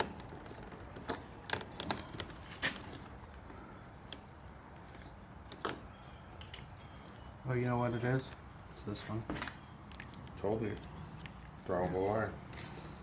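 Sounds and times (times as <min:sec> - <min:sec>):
faint steady background hum: 0:00.0 - 0:13.0
light clicks and taps of handling parts: 0:09.3 - 0:13.0.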